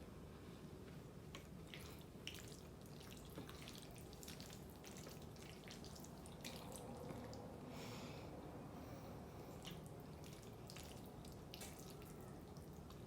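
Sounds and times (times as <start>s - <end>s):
person chewing wetly: 1.3s - 7.4s, 9.5s - 13.0s.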